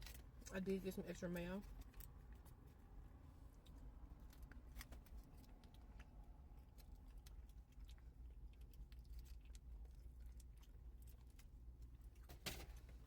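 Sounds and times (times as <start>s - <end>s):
low steady rumble: 0.0s - 13.0s
chewing with mouth clicks: 3.4s - 12.3s.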